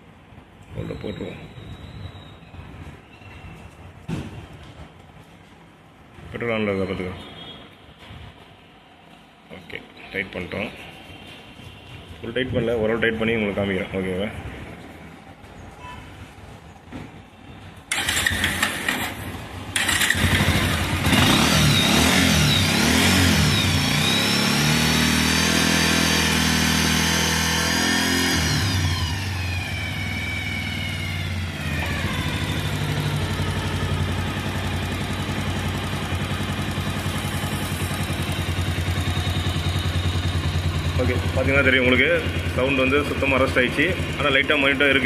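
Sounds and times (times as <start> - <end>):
motorcycle engine revving and idling: 17.9 - 45.0.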